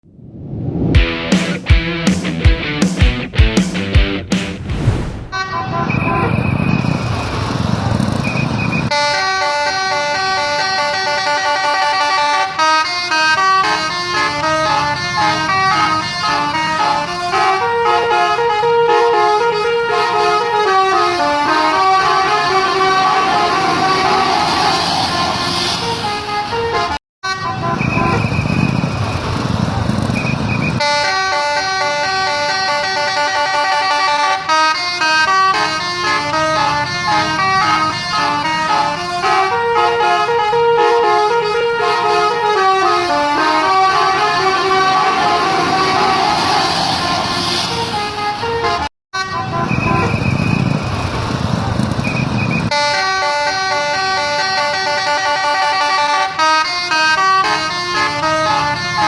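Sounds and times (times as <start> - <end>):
street noise: 0.0 - 59.0
bus musical horn: 8.9 - 28.3, 30.8 - 50.3, 52.7 - 59.0
engine noise: 21.3 - 26.6, 42.8 - 48.4.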